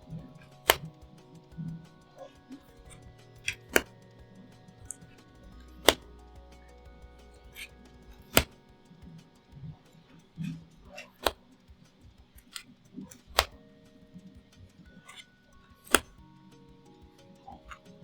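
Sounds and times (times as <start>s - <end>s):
soft background music: 0.0s - 18.0s
trading cards clicking: 0.1s - 8.7s, 10.0s - 13.7s, 15.8s - 16.2s.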